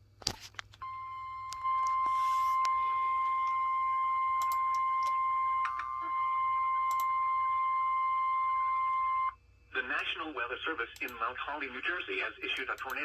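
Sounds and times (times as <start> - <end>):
steady high alarm beep: 0.8 - 9.4.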